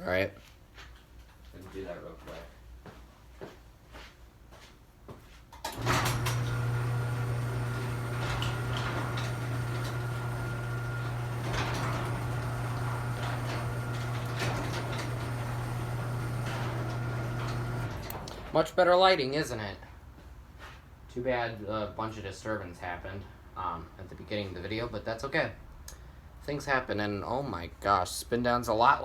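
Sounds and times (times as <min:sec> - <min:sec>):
garage door motor hum: 0:05.6 - 0:18.8
garage door rattling and clanking: 0:05.6 - 0:18.8.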